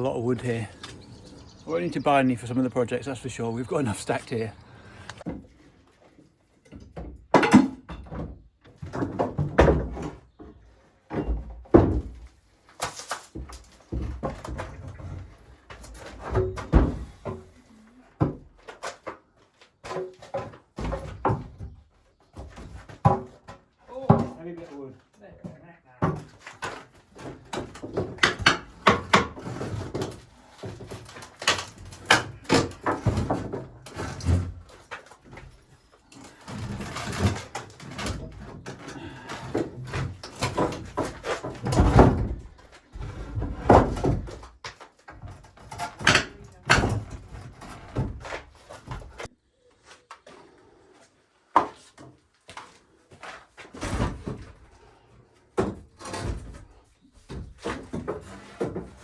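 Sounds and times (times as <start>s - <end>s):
hard objects knocking and clattering: 6.7s - 10.4s.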